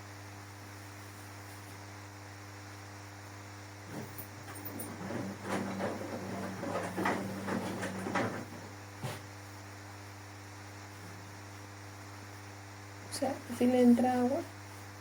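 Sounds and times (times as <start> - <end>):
electrical hum: 0.0 - 15.0
washing machine clicks and knocks: 3.9 - 8.7.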